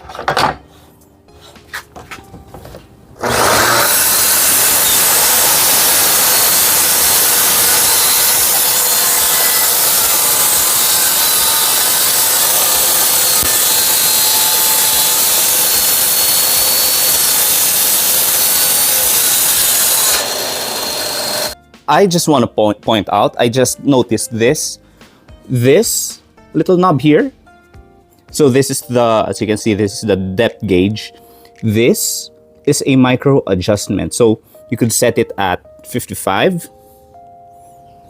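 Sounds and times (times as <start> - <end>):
shop vacuum running: 3.2 - 21.6
track saw cutting wood: 3.2 - 21.6.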